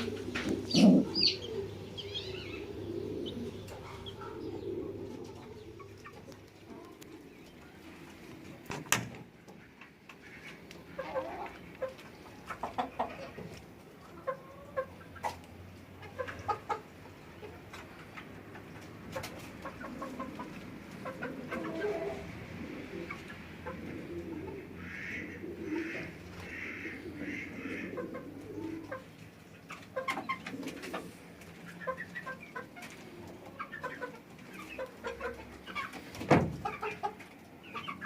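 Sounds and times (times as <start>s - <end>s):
chicks chirping: 0.0s - 6.9s, 36.6s - 38.0s
pigeon cooing: 0.0s - 8.4s, 19.6s - 29.1s, 29.9s - 38.0s.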